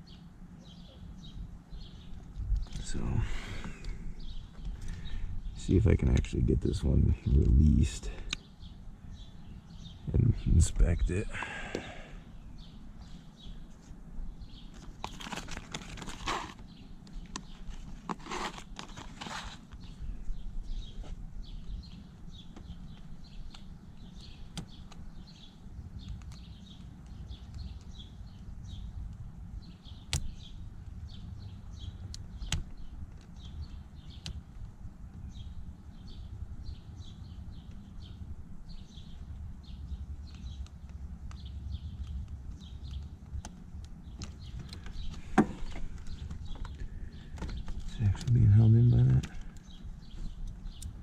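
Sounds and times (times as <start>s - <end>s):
birds chirping: 0.0s - 51.0s
handling rumble: 14.6s - 51.0s.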